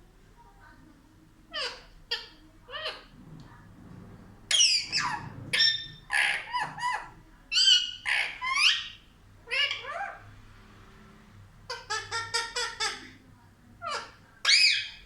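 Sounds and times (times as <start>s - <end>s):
parrot squawking: 1.5s - 3.1s, 4.5s - 10.2s, 11.7s - 13.2s, 13.8s - 15.0s.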